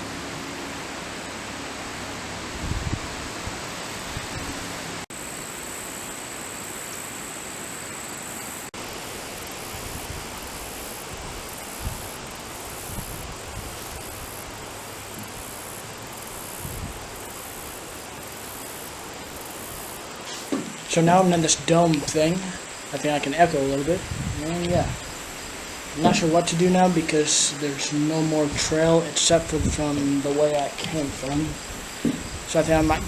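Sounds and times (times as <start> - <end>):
outdoor hiss: 0.0 - 33.0
high insect trill: 5.1 - 33.0
soft low bumps: 25.9 - 27.0, 30.8 - 33.0.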